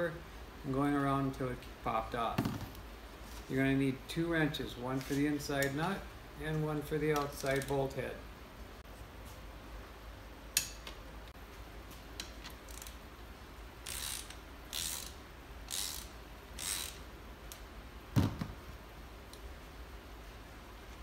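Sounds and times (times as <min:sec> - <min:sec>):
ratchet wrench clicking: 0:13.8 - 0:17.0.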